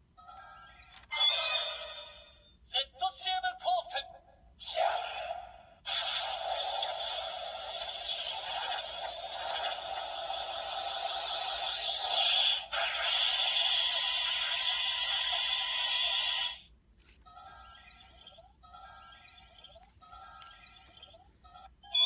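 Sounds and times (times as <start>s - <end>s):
rushing noise from toy speaker: 5.9s - 16.6s.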